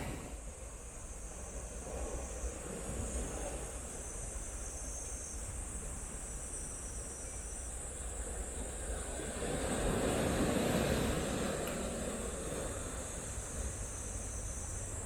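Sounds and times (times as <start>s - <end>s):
sea waves at the shore: 0.0s - 0.4s, 8.0s - 15.0s
wind rumbling on microphone: 0.0s - 0.4s, 8.2s - 14.1s.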